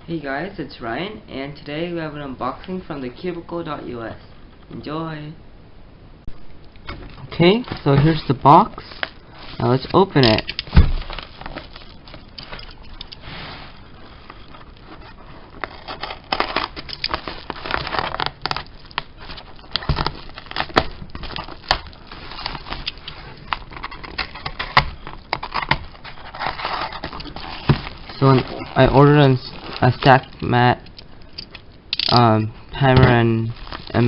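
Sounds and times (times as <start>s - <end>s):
cardboard crinkling and rustling: 7.0s - 30.9s, 32.2s - 34.0s.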